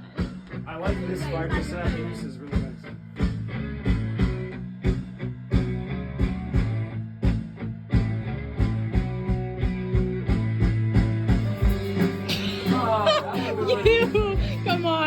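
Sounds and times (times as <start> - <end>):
rock band music: 0.0 - 15.0.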